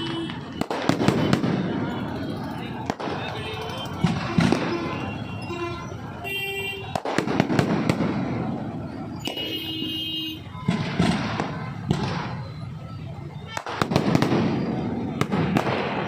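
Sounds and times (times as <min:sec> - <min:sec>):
firework bangs: 0:00.0 - 0:16.0
firework crackling: 0:00.0 - 0:16.0.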